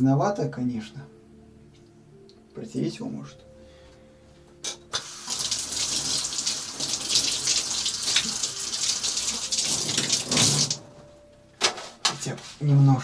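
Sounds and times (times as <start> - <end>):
tap water running into sink: 5.0 - 10.8.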